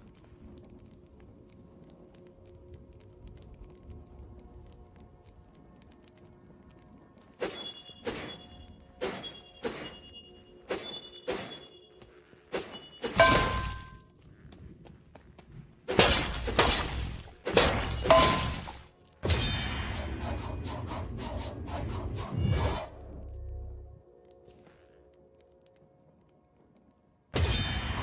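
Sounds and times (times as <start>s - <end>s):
noisy sword strokes ringing: 7.4s - 11.9s, 12.5s - 14.0s.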